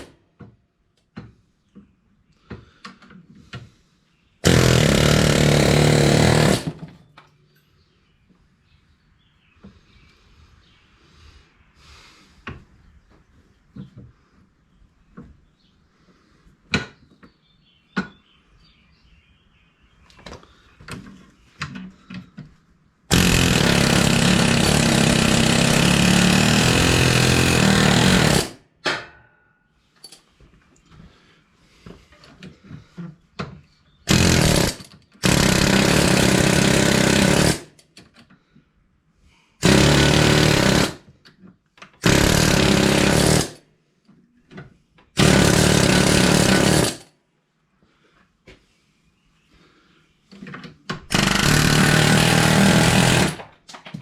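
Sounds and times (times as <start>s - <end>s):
hammering power tool: 4.4s - 7.0s, 23.1s - 28.6s, 34.1s - 37.8s, 39.6s - 41.1s, 42.0s - 43.6s, 45.2s - 47.1s, 51.0s - 53.6s.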